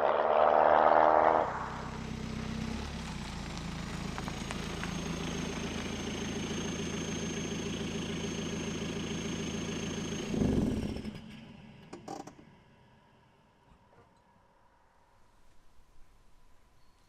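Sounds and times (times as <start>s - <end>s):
high whine: 0.0s - 3.0s
engine shudder stopping: 0.0s - 11.6s
diesel engine idling: 1.6s - 11.1s.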